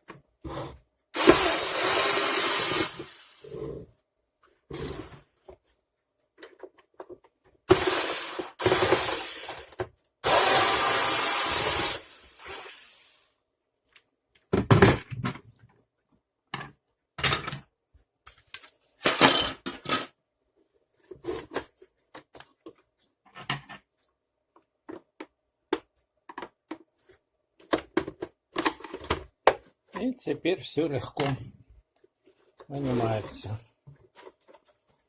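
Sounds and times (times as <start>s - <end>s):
plastic parts clicking and scraping: 6.3s - 8.0s, 24.8s - 30.1s, 32.0s - 35.0s.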